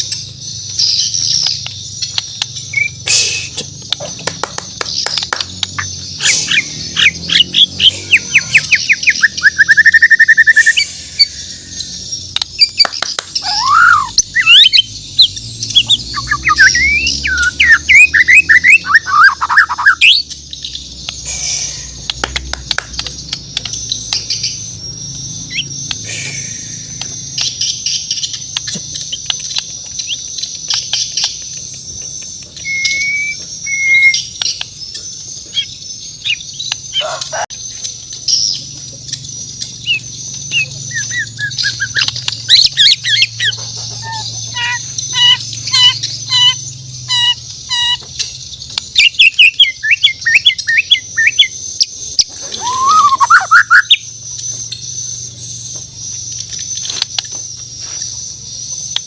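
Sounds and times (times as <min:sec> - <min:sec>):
high-pitched chirping: 0:00.0 - 0:59.0
bird singing whistled phrases: 0:06.2 - 0:12.0, 0:12.6 - 0:14.9, 0:15.7 - 0:20.2, 0:32.4 - 0:34.4, 0:52.3 - 0:54.1
sharp clicks: 0:22.0 - 0:24.5, 0:27.0 - 0:33.5.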